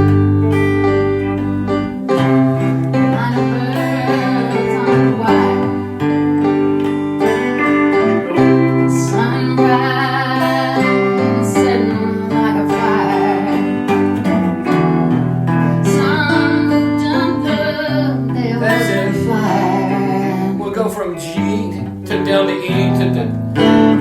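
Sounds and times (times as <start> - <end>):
acoustic guitar strumming: 0.0 - 24.0
woman singing: 2.2 - 20.7.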